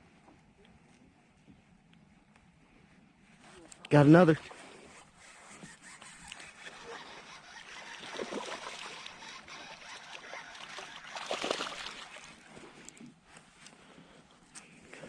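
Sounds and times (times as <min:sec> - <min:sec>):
water splashing and trickling: 0:06.7 - 0:12.5.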